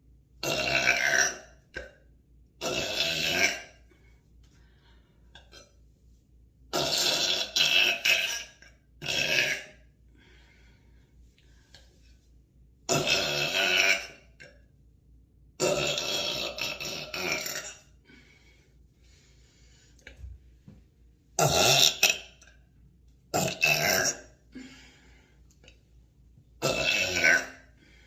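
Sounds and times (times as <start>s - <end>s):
woman belching: 0.4s - 1.9s, 2.6s - 3.8s, 6.7s - 9.8s, 12.9s - 14.6s, 15.6s - 17.8s, 21.4s - 22.5s, 23.4s - 24.3s, 26.6s - 27.6s.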